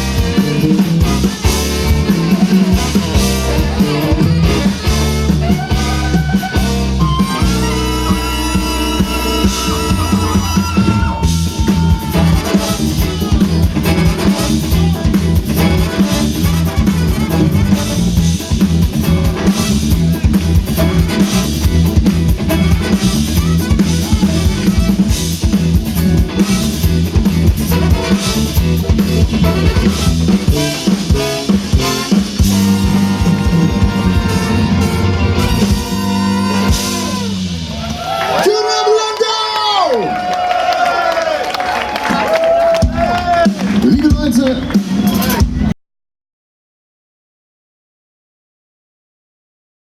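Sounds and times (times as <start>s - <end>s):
brass band music: 0.0s - 39.4s
drum kit beat: 0.0s - 39.4s, 42.0s - 45.8s.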